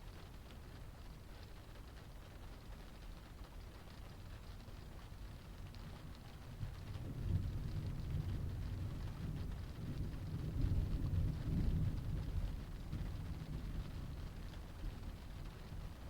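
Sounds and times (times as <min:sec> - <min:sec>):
rain on a car roof: 0:00.0 - 0:16.0.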